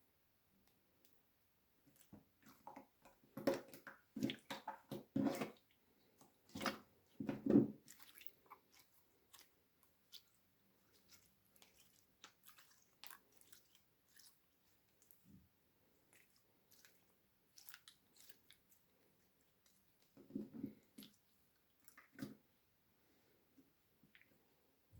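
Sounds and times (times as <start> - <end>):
slime squelching and popping: 16.0 - 18.8.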